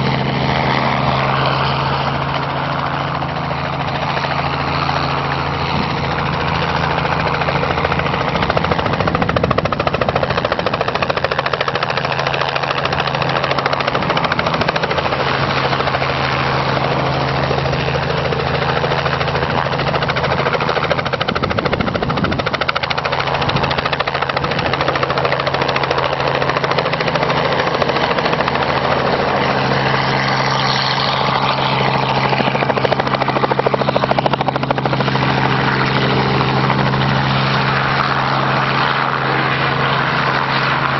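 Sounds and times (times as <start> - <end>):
helicopter flying: 0.0 - 40.9.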